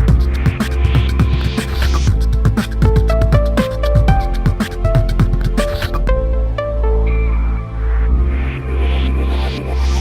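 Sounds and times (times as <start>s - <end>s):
electronic dance music: 0.0s - 7.4s.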